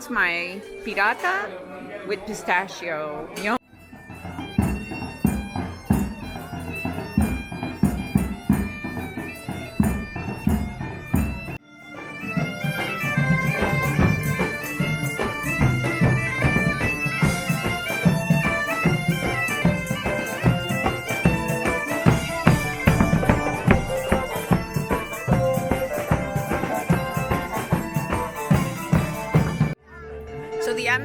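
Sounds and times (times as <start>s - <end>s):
bagpipes playing a tune: 3.7s - 29.8s
drumbeat: 3.9s - 11.6s, 12.2s - 29.8s.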